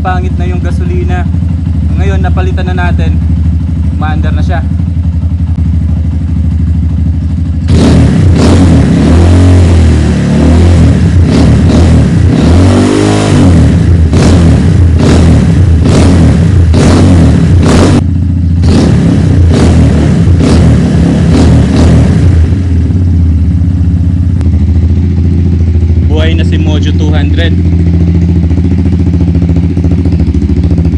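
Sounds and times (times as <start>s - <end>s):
motorcycle engine idling and revving: 0.0s - 30.9s
exhaust cracks: 24.2s - 30.9s.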